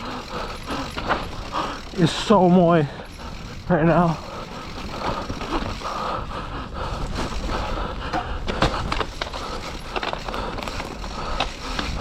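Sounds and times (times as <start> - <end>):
bike clicks and rattles: 0.0 - 12.0
bike tyres on muddy trail: 0.0 - 12.0.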